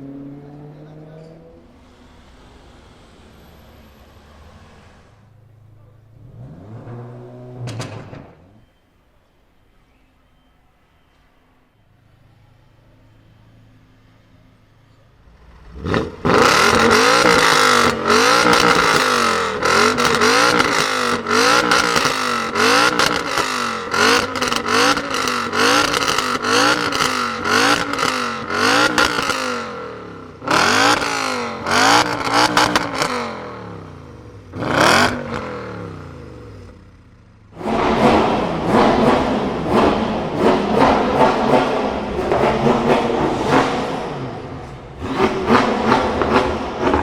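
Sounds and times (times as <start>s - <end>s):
car engine revving: 0.0s - 8.6s, 15.1s - 47.0s.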